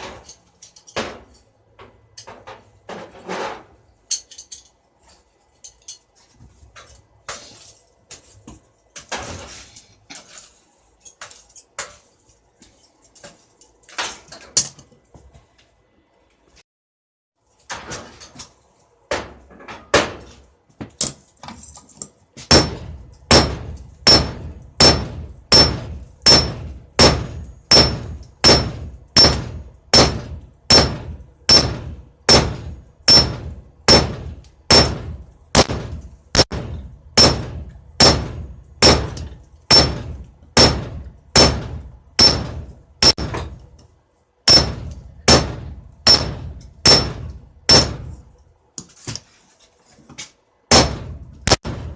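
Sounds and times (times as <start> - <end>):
hammer striking steel on anvil: 22.5 - 43.6, 44.4 - 48.3.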